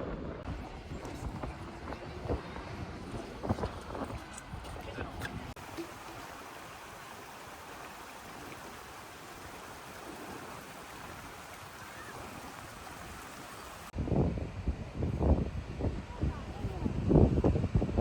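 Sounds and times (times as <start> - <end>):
stream rushing: 0.5 - 14.0.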